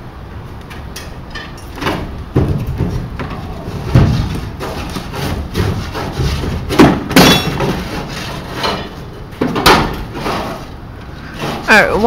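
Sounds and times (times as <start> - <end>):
sharp knocks: 1.4 - 8.0, 9.4 - 10.0
scraping and rubbing: 2.5 - 12.0.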